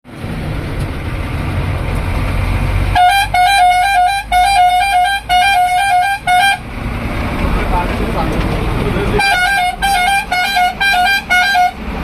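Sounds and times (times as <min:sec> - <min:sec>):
vehicle rumble: 0:00.1 - 0:12.0
musical multi-tone bus horn: 0:02.9 - 0:06.8, 0:09.1 - 0:12.0.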